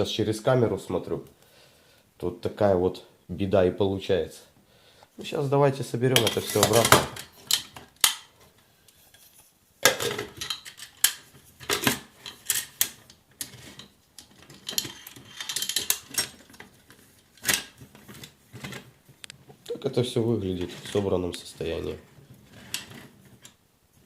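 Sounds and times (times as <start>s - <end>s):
metal camping parts clinking: 9.8s - 16.6s.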